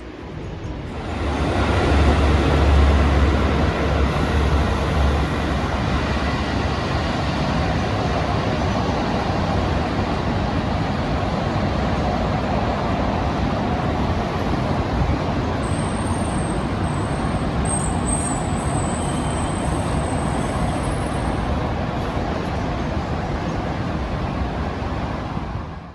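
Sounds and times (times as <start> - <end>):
train rumbling past: 0.0 - 25.9
high-pitched squeal: 0.9 - 7.9, 15.6 - 21.6.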